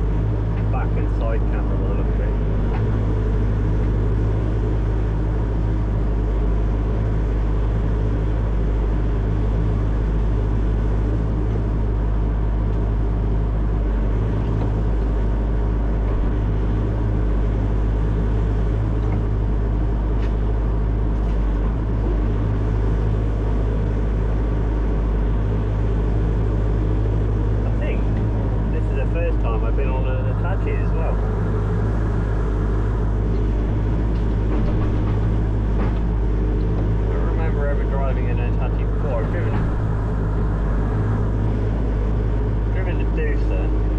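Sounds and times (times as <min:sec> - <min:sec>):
diesel engine droning: 0:00.0 - 0:43.9.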